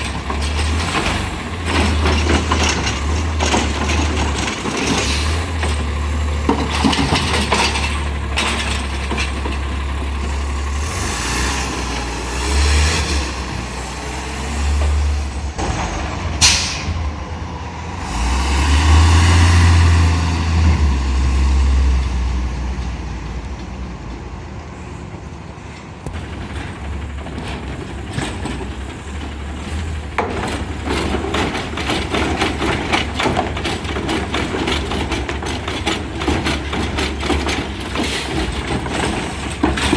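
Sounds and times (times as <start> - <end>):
clattering and rattling: 0.0 - 12.2, 26.1 - 39.9
garbage truck engine humming: 0.0 - 25.1, 26.1 - 39.9
short air hiss: 16.4 - 17.0.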